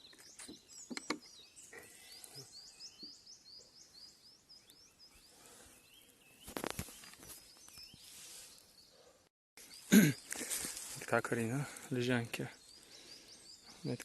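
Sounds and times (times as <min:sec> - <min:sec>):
lower bird calls: 0:00.0 - 0:09.0
songbird high chirps: 0:00.0 - 0:09.0, 0:09.6 - 0:14.0.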